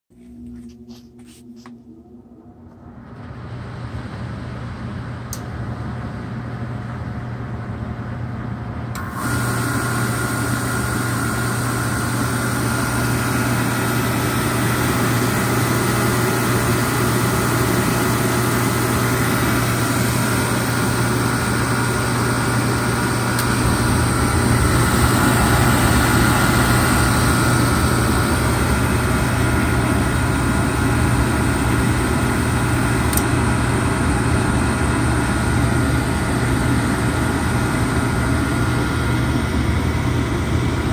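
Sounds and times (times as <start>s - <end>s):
furnace hum: 0.1s - 40.9s
burner motor whine and rush: 8.9s - 40.9s.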